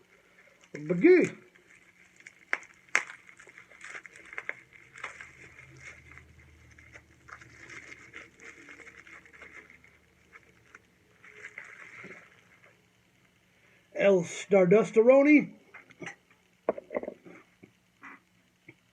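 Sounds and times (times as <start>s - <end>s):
packaging rustling: 0.1s - 12.9s.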